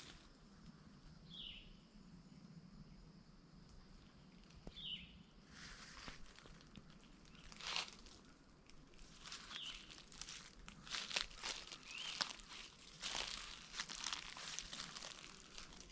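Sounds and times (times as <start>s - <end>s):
footsteps crunching dry leaves: 5.5s - 15.9s.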